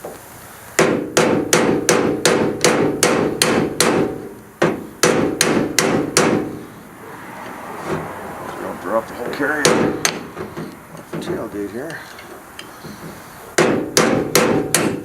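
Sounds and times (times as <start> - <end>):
hammer striking metal: 0.8 - 6.6, 9.6 - 11.3, 13.6 - 15.0.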